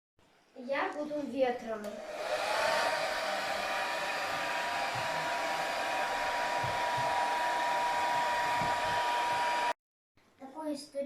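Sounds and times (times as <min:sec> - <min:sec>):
hair dryer blowing air: 0:01.9 - 0:09.8.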